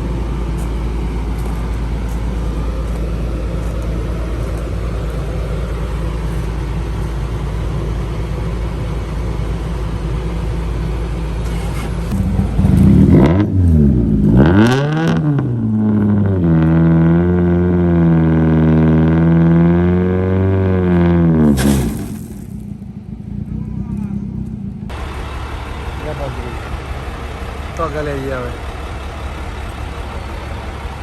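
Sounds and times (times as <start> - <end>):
road noise: 0.0 - 31.0
car engine revving: 11.4 - 25.1.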